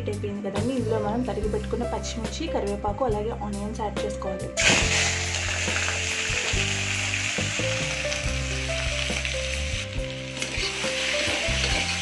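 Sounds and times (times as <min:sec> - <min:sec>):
vegetables sizzling in hot oil: 0:04.6 - 0:12.0.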